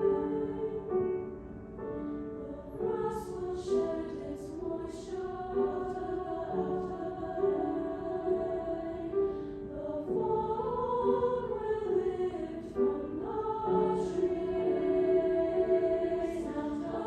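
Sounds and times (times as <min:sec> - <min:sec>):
choir singing: 0:00.0 - 0:17.0
piano accompaniment: 0:00.0 - 0:17.0.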